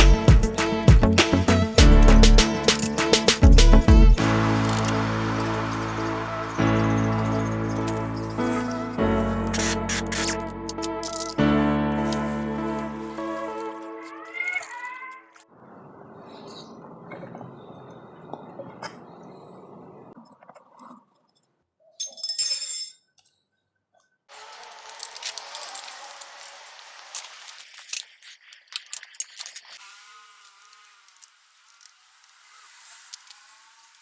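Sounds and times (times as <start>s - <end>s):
metal tools clinking: 9.5s - 11.4s, 22.0s - 23.3s, 24.5s - 29.8s.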